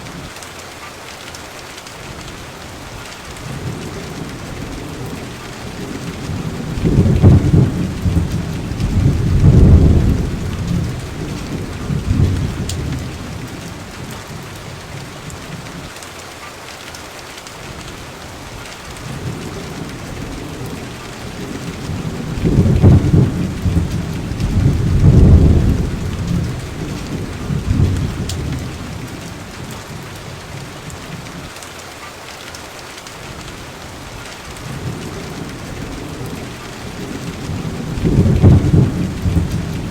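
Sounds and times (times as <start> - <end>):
steady rain: 0.0 - 39.9
low thunder rolling: 3.4 - 15.7, 19.0 - 31.0, 34.6 - 39.9.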